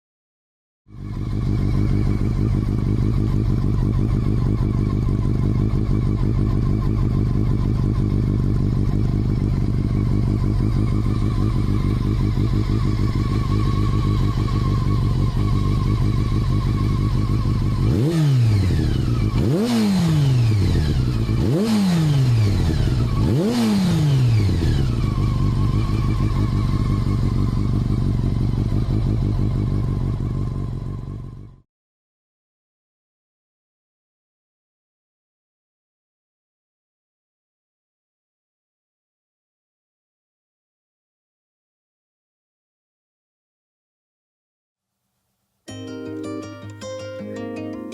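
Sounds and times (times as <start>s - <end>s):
motorcycle engine idling and revving: 0.9s - 31.7s.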